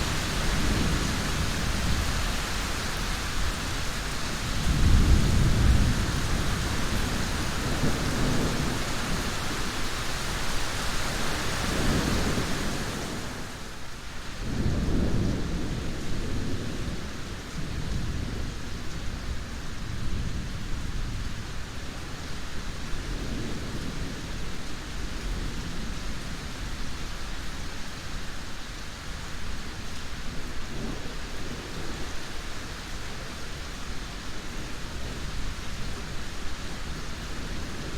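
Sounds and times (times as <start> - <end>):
rolling thunder: 0.0 - 9.8
steady rain: 0.0 - 37.9.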